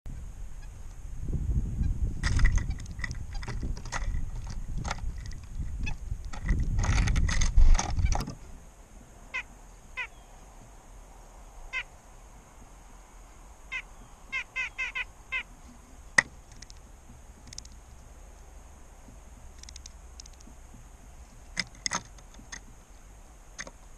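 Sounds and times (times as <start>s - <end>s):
bird calling in falling notes: 9.3s - 10.4s, 13.7s - 15.6s.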